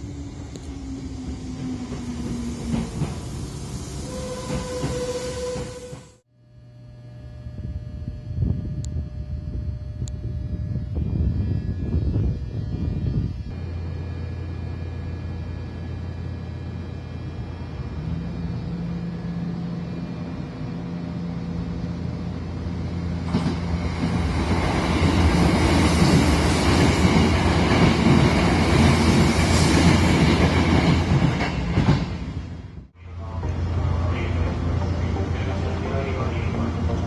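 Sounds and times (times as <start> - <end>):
electric train on rails: 0.0 - 6.3, 7.6 - 37.0
low steady hum: 6.4 - 23.2.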